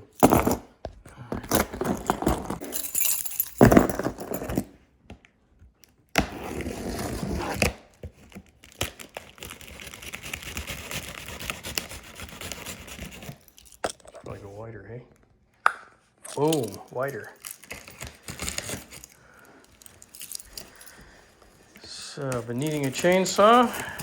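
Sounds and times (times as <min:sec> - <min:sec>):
rustling and crinkling: 0:16.4 - 0:24.0.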